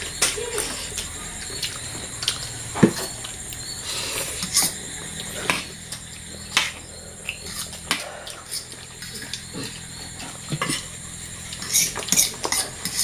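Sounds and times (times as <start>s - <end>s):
steady low hum: 0.0s - 13.0s
cutlery and plates clinking: 11.6s - 13.0s.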